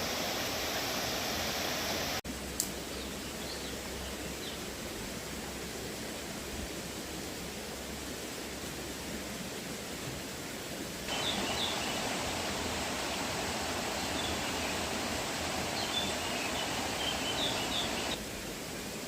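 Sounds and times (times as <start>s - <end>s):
flowing river water: 0.0s - 19.0s
small birds chirping: 11.1s - 18.2s.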